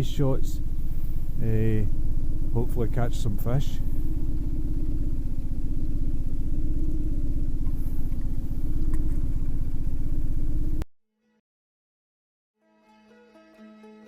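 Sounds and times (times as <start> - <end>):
engine running steadily: 0.0 - 10.8.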